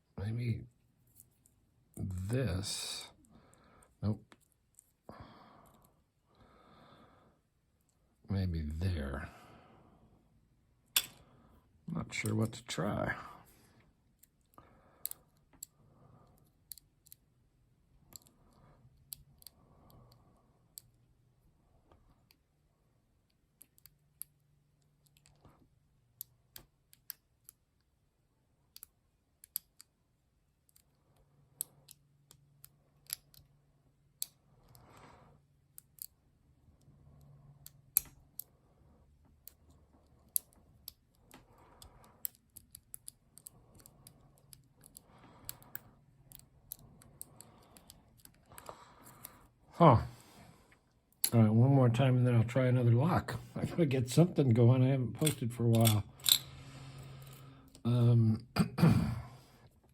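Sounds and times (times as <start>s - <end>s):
lock pick clicking and scraping: 14.2s - 17.3s, 18.0s - 21.0s, 28.7s - 30.0s, 31.6s - 34.8s, 35.7s - 36.2s, 39.3s - 49.5s, 55.2s - 56.6s.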